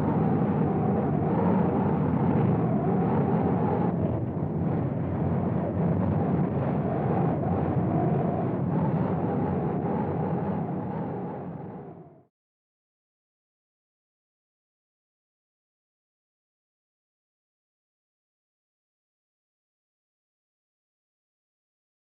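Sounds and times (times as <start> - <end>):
strong storm wind blowing: 0.0 - 12.2.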